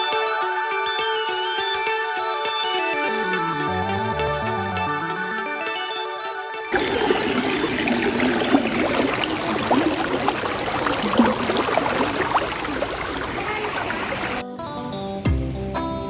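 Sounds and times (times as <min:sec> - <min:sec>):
stream water flowing and gurgling: 0:06.6 - 0:14.4.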